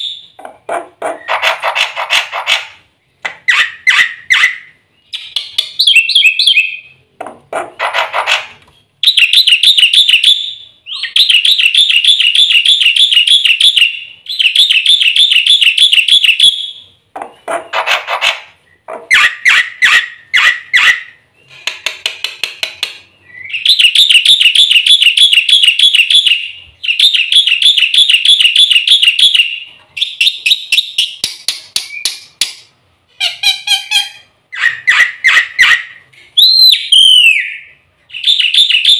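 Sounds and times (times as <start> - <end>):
harsh bird calls: 0.0 - 21.9, 33.1 - 38.9.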